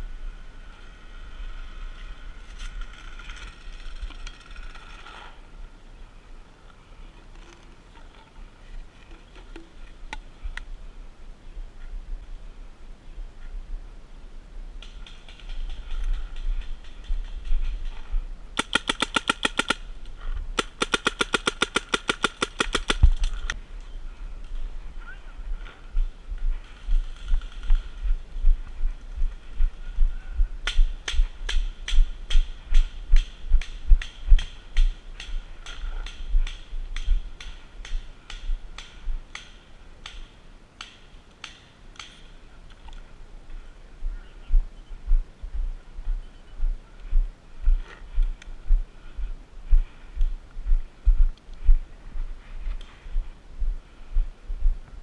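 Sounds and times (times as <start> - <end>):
paintball markers firing: 18.6 - 19.8, 20.6 - 23.5.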